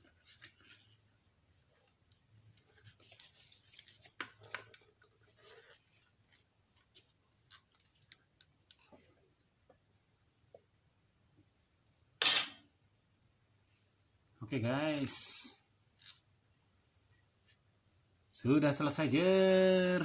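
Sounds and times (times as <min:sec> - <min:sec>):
small clicks and scrapes of parts: 0:01.8 - 0:09.2, 0:15.9 - 0:16.2.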